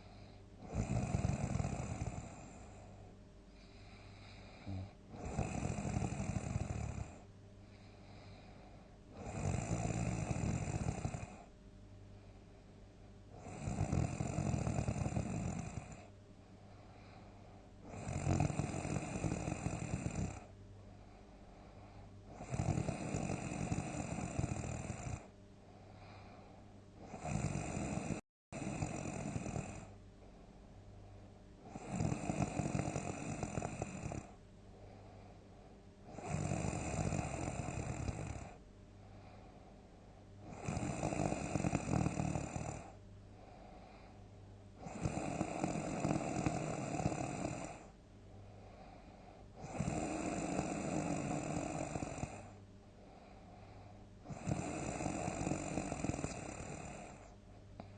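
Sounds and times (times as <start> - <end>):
quiet breathing: 0.0 - 57.9
person snoring loudly: 0.6 - 2.8, 4.2 - 7.2, 9.1 - 11.5, 13.4 - 16.1, 17.9 - 20.5, 22.3 - 25.3, 27.0 - 30.0, 31.6 - 34.4, 36.1 - 38.6, 40.4 - 43.0, 44.8 - 47.9, 49.6 - 52.6, 54.3 - 57.3.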